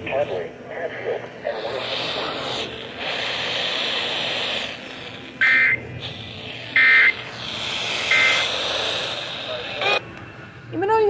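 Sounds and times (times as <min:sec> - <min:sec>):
steady radio hiss: 0:00.0 - 0:10.8
shrill digital warble tones: 0:06.7 - 0:07.3, 0:08.0 - 0:08.5.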